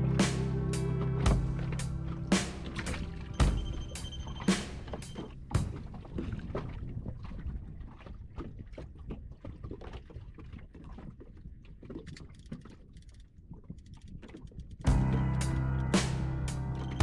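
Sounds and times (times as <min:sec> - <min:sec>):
wind rumble on microphone: 0:00.0 - 0:17.0
water lapping against boat hull: 0:01.0 - 0:16.3.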